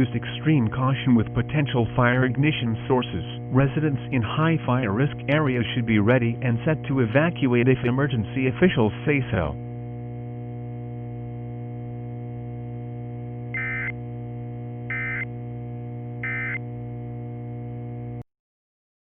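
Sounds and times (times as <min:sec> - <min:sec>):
steady electronic hum: 0:00.0 - 0:18.2
buzzy digital code bursts: 0:13.6 - 0:14.0, 0:14.9 - 0:15.3, 0:16.2 - 0:16.6.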